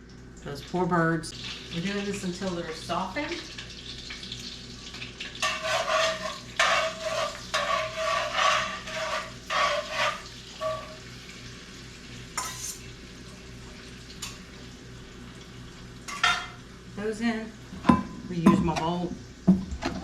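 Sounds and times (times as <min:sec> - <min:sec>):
vegetables sizzling in butter: 0:00.6 - 0:17.5
utensil stirring and scraping pot: 0:05.4 - 0:11.0, 0:12.4 - 0:12.9, 0:16.1 - 0:16.6.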